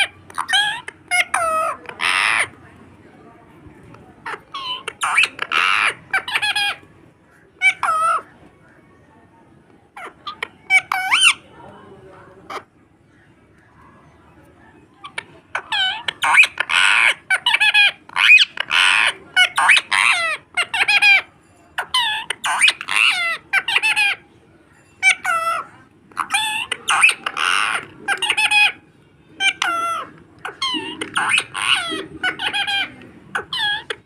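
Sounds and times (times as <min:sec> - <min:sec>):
parrot squawking: 0:00.0 - 0:02.6, 0:04.2 - 0:06.9, 0:07.6 - 0:08.3, 0:10.0 - 0:11.5, 0:15.0 - 0:24.2, 0:25.0 - 0:28.8, 0:29.4 - 0:34.0.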